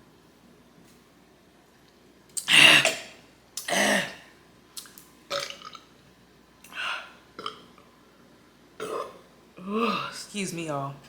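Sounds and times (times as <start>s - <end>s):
woman burping: 8.8s - 10.2s.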